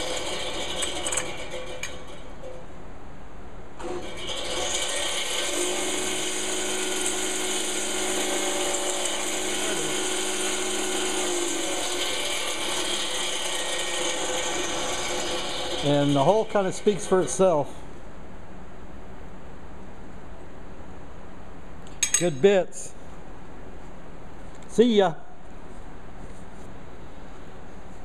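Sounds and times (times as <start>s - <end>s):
power drill grinding into steel: 3.8s - 16.2s.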